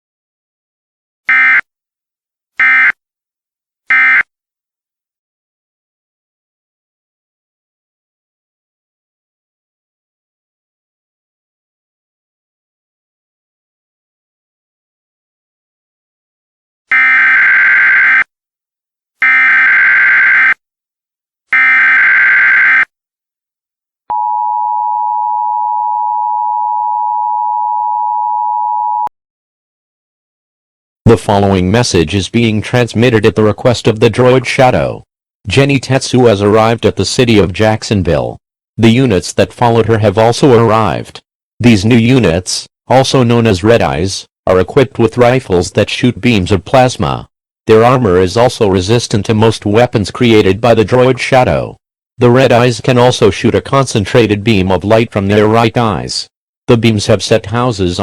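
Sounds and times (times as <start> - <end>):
two-tone attention signal: 3.9 - 4.2, 24.1 - 29.1.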